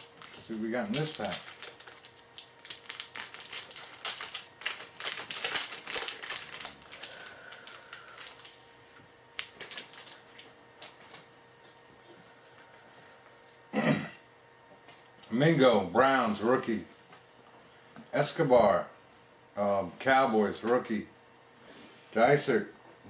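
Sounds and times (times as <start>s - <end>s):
wrapper tearing and crinkling: 0.0s - 8.6s, 9.4s - 10.5s.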